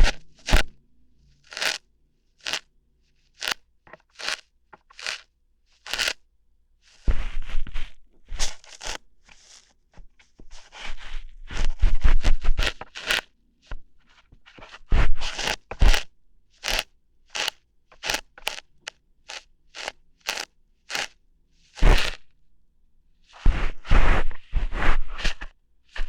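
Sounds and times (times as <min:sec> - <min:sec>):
ear hair plucking: 0:00.0 - 0:00.7, 0:01.4 - 0:01.8, 0:02.4 - 0:02.7, 0:03.3 - 0:06.2, 0:08.5 - 0:09.6, 0:12.5 - 0:13.3, 0:15.2 - 0:22.3.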